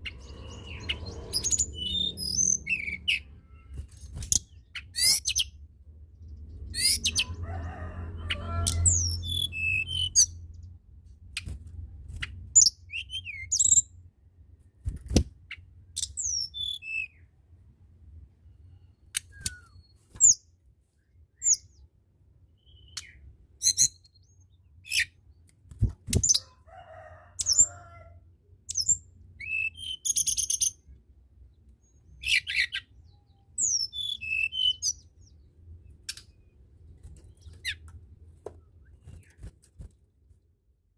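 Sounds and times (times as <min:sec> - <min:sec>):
songbird whistling phrases: 0:32.3 - 0:35.0.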